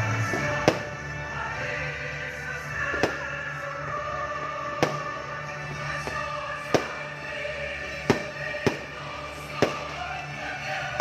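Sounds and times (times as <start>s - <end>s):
music playing: 0.0s - 11.0s
firework bangs: 4.8s - 5.2s, 6.1s - 7.2s, 8.0s - 10.2s.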